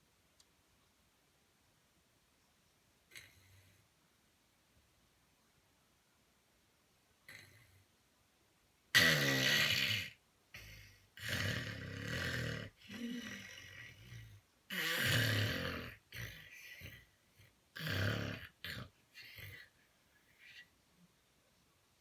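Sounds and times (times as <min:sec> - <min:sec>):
woman snoring: 0:09.0 - 0:17.1, 0:17.8 - 0:19.7.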